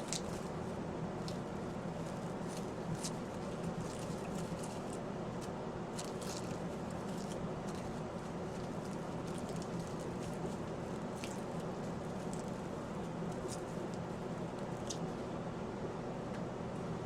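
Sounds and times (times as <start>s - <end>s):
cling wrap crinkling: 0.0s - 15.2s.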